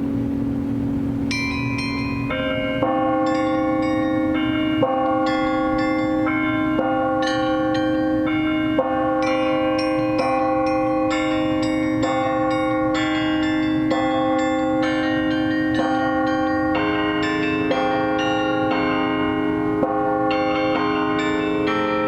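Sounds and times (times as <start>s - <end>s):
bell tower bells playing melody: 0.0s - 22.0s.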